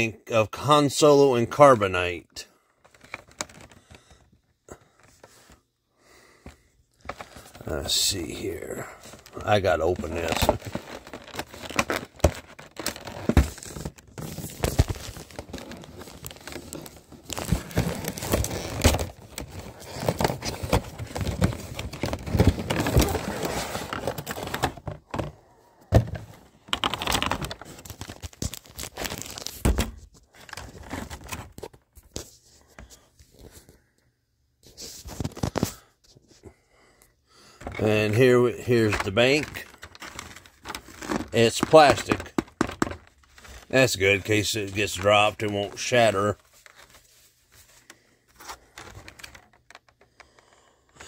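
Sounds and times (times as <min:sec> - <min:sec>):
packaging tearing and crinkling: 0:09.2 - 0:24.8, 0:26.7 - 0:29.8, 0:38.6 - 0:47.0.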